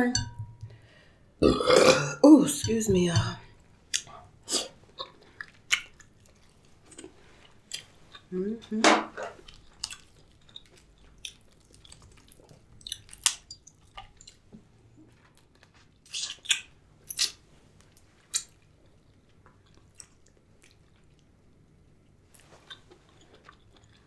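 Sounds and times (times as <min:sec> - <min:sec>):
wet chewing and smacking: 0:04.9 - 0:08.3, 0:09.4 - 0:24.0.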